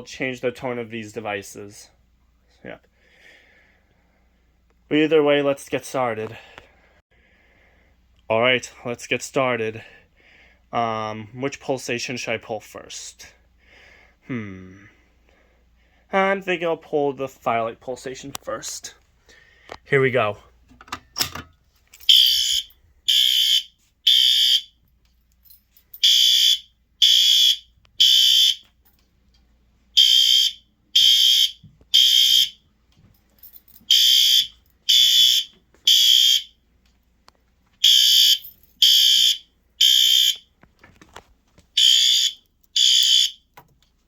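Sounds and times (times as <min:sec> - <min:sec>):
fire alarm horn blasts: 0:22.1 - 0:24.8, 0:26.0 - 0:28.7, 0:30.0 - 0:32.7, 0:33.9 - 0:36.6, 0:37.8 - 0:40.5, 0:41.8 - 0:43.5.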